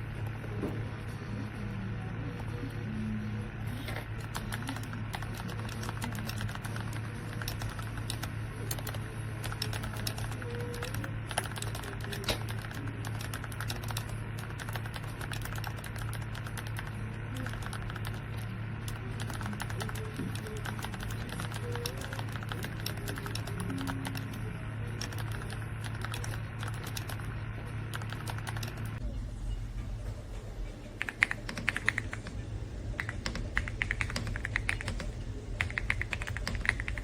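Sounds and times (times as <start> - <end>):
mechanical keyboard clicks: 4.2 - 18.2, 18.9 - 24.3, 25.0 - 27.3, 27.9 - 28.8, 31.0 - 32.4, 33.0 - 37.0.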